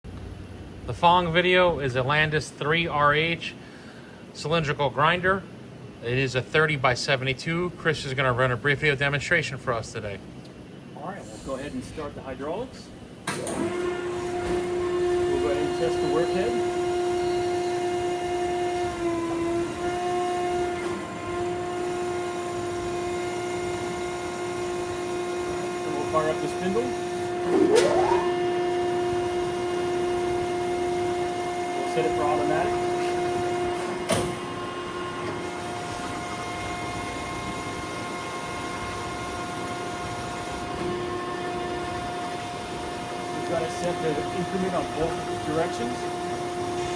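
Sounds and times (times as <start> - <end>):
grinder machine humming: 13.2 - 46.9.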